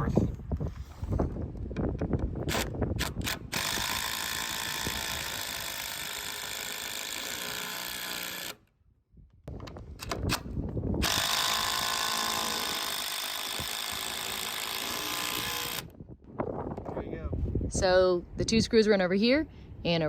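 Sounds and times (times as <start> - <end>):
cordless drill driving screw into wood: 2.4 - 8.7, 11.0 - 15.9
drill clicks: 2.4 - 8.8, 10.0 - 15.9.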